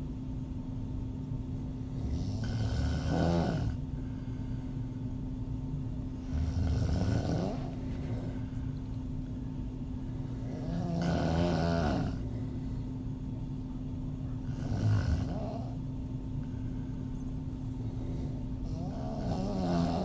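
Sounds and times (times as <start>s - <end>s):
woman snoring: 1.9s - 3.8s, 6.2s - 8.4s, 10.4s - 12.3s, 14.5s - 15.8s, 18.1s - 20.0s.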